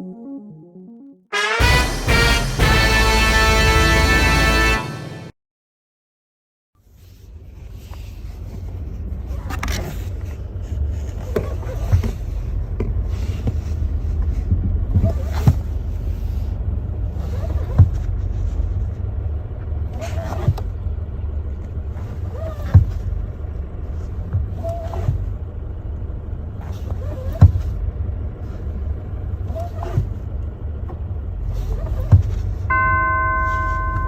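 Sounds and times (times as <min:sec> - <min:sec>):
car engine idling: 0:23.0 - 0:34.0.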